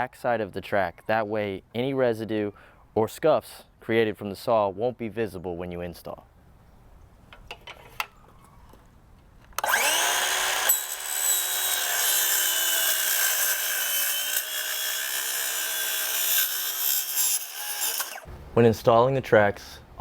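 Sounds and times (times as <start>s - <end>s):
power saw cutting: 9.6s - 18.3s.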